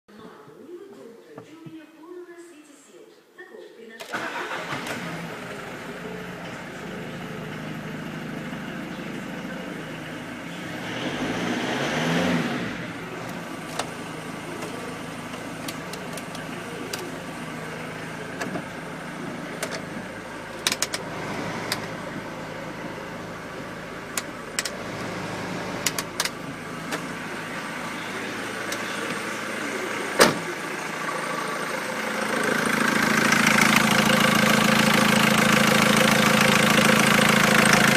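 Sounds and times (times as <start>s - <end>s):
car engine idling and revving: 4.1s - 37.9s
sharp clicks: 20.6s - 21.0s.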